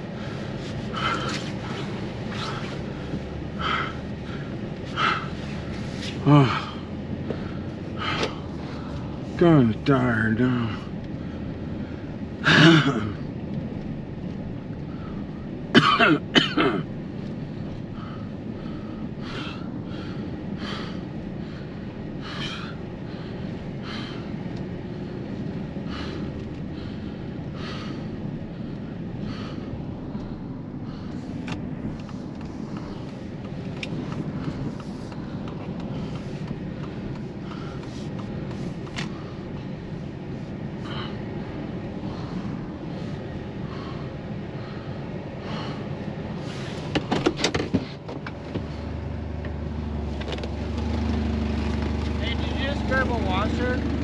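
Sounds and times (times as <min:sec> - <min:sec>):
low rumble: 0:00.0 - 0:15.8, 0:16.8 - 0:46.8
person coughing: 0:12.4 - 0:13.2, 0:15.8 - 0:16.9.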